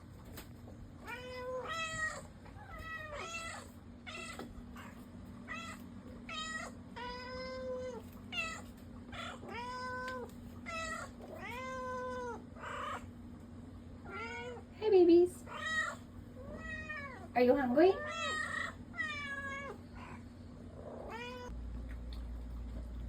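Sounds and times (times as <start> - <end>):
cats meowing: 1.0 - 13.1, 14.0 - 14.7, 15.4 - 17.3, 17.9 - 20.2, 20.8 - 21.5.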